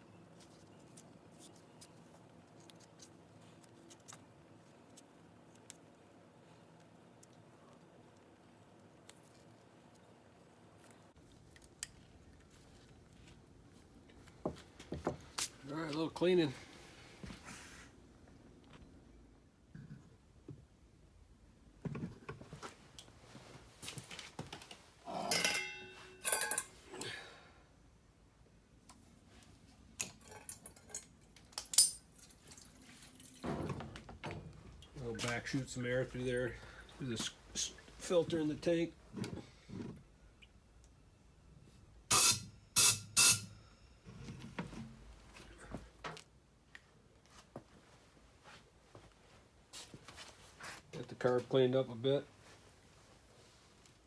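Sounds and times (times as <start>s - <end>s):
faint clicks and handling noises: 0.3s - 10.2s, 10.8s - 16.3s, 21.8s - 24.9s, 28.8s - 41.0s
compressed air hissing from nozzle: 42.1s - 43.4s.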